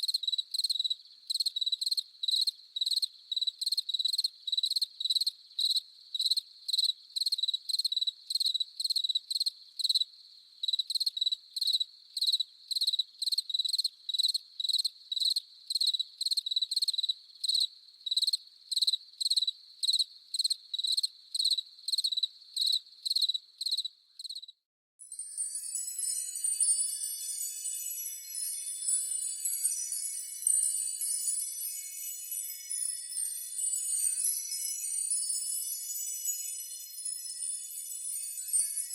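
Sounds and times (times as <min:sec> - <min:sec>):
cricket chirping: 0:00.0 - 0:38.9
magic chimes ringing: 0:25.0 - 0:38.9.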